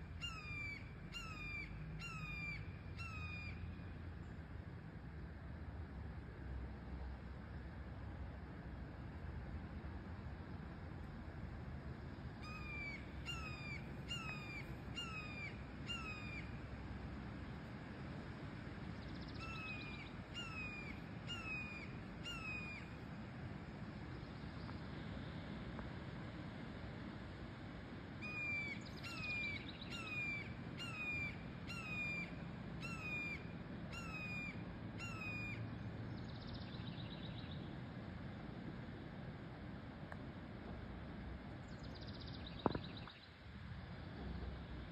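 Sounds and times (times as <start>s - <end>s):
hawk begging call: 12.4s - 16.5s, 19.4s - 22.9s, 28.2s - 35.6s.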